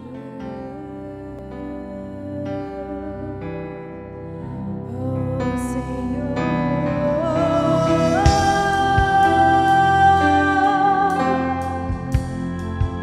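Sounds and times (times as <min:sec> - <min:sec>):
person singing over instruments: 0:04.6 - 0:13.0.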